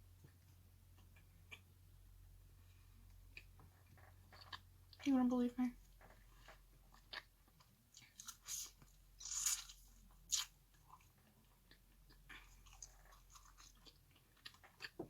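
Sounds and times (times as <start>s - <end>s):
chewing crunchy fried chicken: 3.0s - 5.1s, 5.9s - 15.0s.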